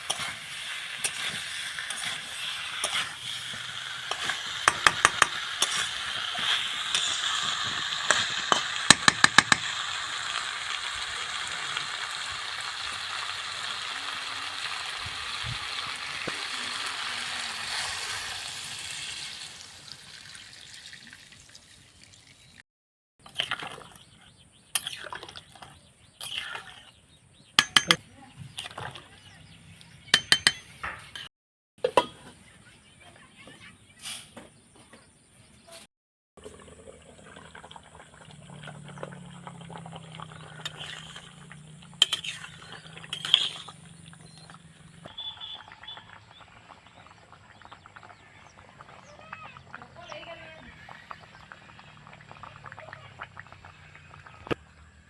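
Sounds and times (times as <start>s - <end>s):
food sizzling in a pan: 0.0s - 22.6s
metal spoon clinking on pan: 4.1s - 5.8s, 8.1s - 9.7s, 27.6s - 28.0s, 30.2s - 30.8s.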